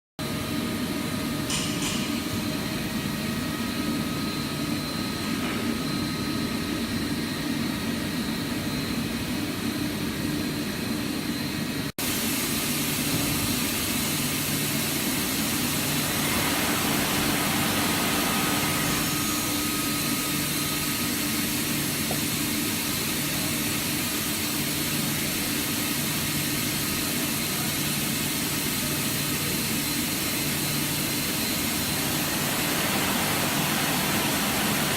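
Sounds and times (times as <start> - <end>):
machine hum with whining tones: 0.2 - 34.9.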